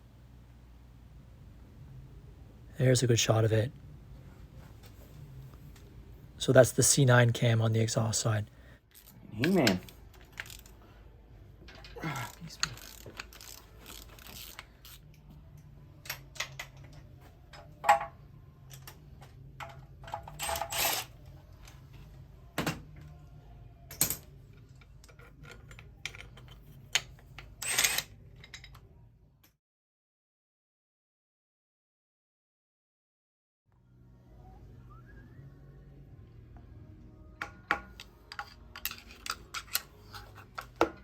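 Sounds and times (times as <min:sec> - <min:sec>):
low steady hum: 0:00.0 - 0:29.5
metal tools clinking: 0:38.2 - 0:40.8.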